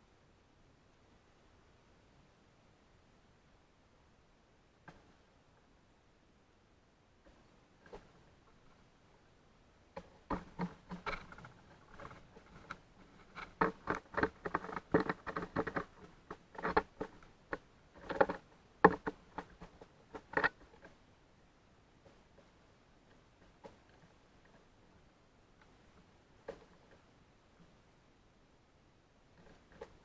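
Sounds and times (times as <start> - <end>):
birds pecking and tapping: 10.0 - 21.0
rustling seed: 10.2 - 21.0.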